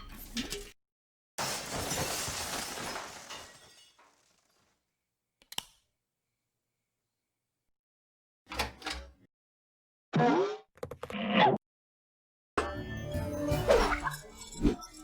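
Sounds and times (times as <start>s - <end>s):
glass shattering: 1.4s - 4.5s.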